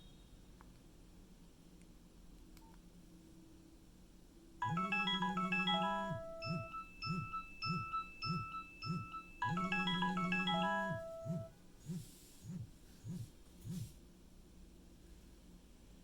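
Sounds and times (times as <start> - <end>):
polyphonic phone ringtone: 4.6 - 11.5
low pulsing buzz: 6.0 - 14.0.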